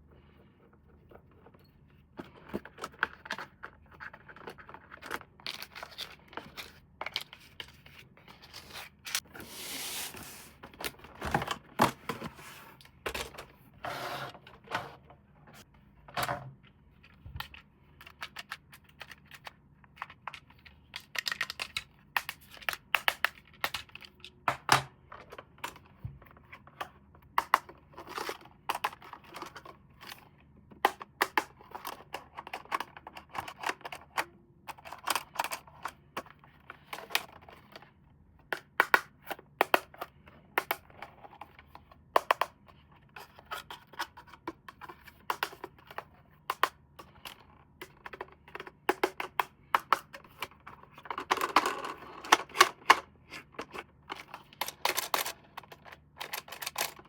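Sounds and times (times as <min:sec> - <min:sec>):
plastic parts clicking and tapping: 0:17.1 - 0:29.8, 0:30.7 - 0:57.0.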